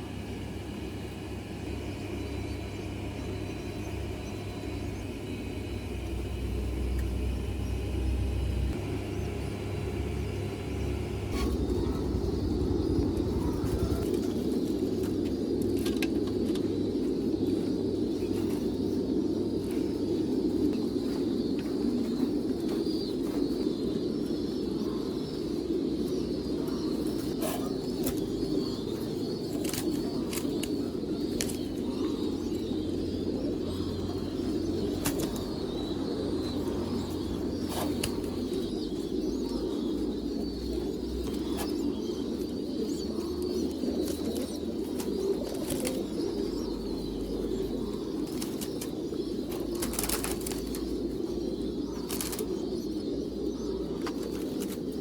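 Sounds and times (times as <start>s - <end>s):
pigeons cooing: 0.0s - 55.0s
wing flaps: 4.4s - 16.6s, 48.2s - 50.9s.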